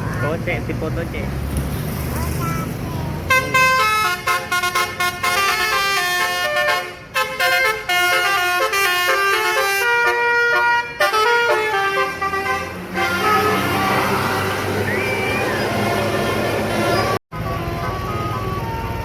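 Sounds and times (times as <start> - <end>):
bus engine running: 0.0 - 19.0
bus horn playing melody: 3.3 - 19.0.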